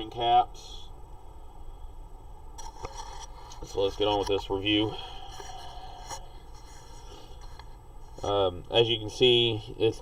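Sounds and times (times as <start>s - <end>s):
faint rubbing: 2.7s - 8.5s.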